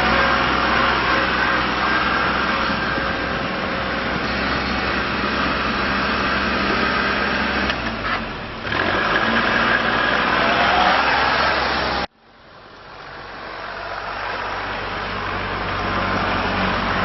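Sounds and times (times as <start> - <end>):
tractor diesel engine running: 0.0 - 10.5, 11.6 - 17.0.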